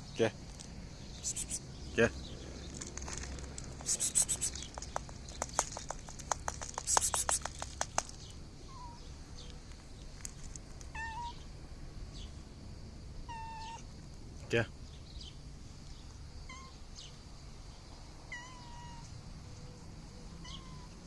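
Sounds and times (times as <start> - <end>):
short hissing bursts: 1.2 - 1.6, 3.8 - 4.7
sharp clicks: 3.6 - 8.3
cat chirping meows: 8.6 - 9.1, 10.9 - 11.4, 13.3 - 13.9, 16.4 - 16.8, 18.3 - 19.2, 20.4 - 21.0.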